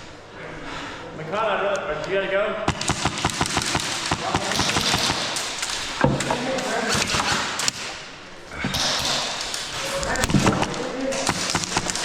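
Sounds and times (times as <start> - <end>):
airsoft guns firing: 2.7 - 12.0
pellets smacking surfaces: 2.7 - 12.0.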